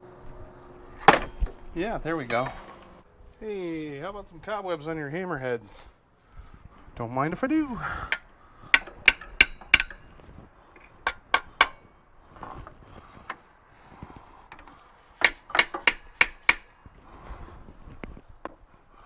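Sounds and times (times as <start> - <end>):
hammer striking metal: 1.0 - 1.7, 8.7 - 10.1, 11.0 - 11.9, 15.2 - 16.7.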